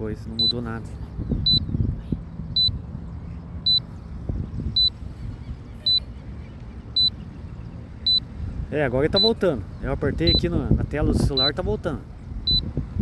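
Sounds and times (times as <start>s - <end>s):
low wind rumble on microphone: 0.0s - 13.0s
high warning beeps: 0.3s - 0.7s, 1.5s - 1.7s, 2.6s - 2.8s, 3.6s - 3.9s, 4.8s - 5.0s, 7.0s - 7.2s, 8.1s - 8.3s, 9.2s - 9.4s, 10.3s - 10.5s, 12.5s - 12.7s.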